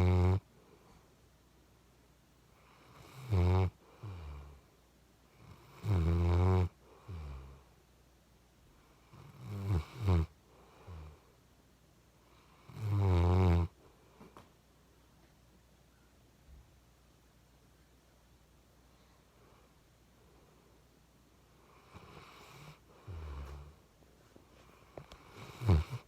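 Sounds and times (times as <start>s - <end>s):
puppy snoring: 0.0s - 0.5s, 2.6s - 4.7s, 5.3s - 7.7s, 8.8s - 11.3s, 12.2s - 13.8s, 21.6s - 23.8s, 24.6s - 26.0s
soft dog breathing: 21.5s - 26.0s.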